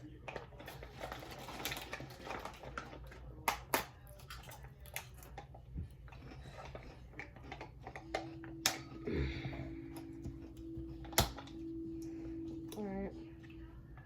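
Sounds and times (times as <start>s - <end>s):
low steady hum: 0.0s - 14.0s
faint steady tone: 7.8s - 14.0s.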